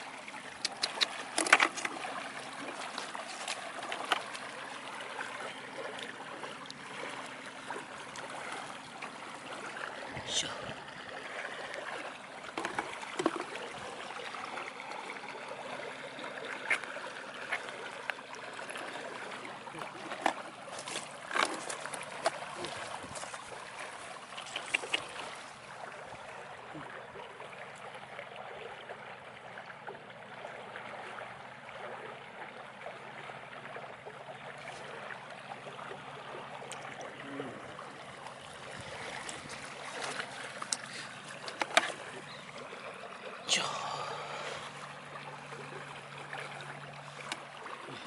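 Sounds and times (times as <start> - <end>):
flowing water: 0.0 - 48.0.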